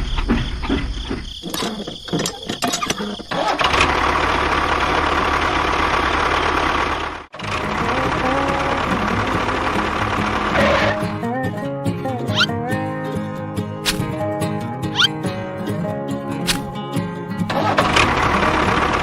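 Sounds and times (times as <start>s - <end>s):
engine cranking and running: 1.5s - 11.2s, 17.5s - 19.0s.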